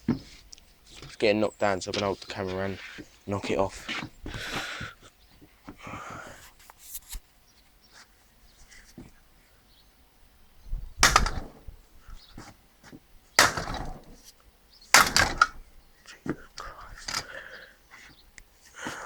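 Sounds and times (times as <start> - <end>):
hammer blows on metal lock: 11.0 - 11.8, 13.4 - 14.3, 15.0 - 15.7.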